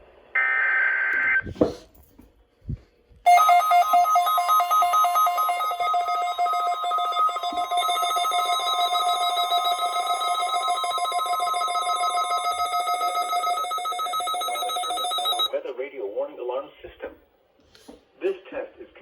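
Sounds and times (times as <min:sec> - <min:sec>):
pulsing two-tone alarm trill: 0:03.3 - 0:15.5
steady warning alarm tone: 0:03.3 - 0:15.5.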